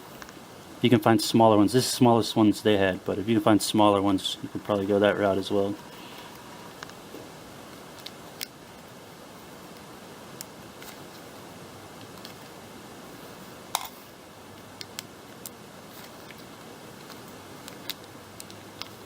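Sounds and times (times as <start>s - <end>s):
steady hiss: 0.0s - 19.0s.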